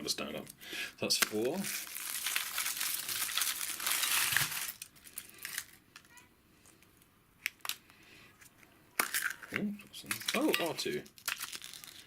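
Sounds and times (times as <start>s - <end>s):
foil wrapper crinkling: 1.2s - 6.2s, 9.0s - 12.0s.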